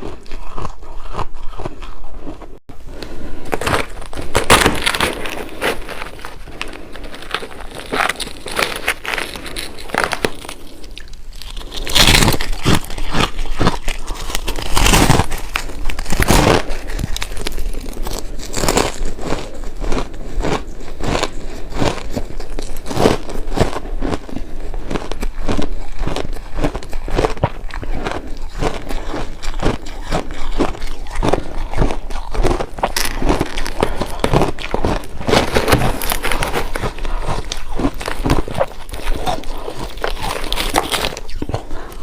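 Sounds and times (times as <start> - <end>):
crunching shaved ice: 3.4 - 42.0.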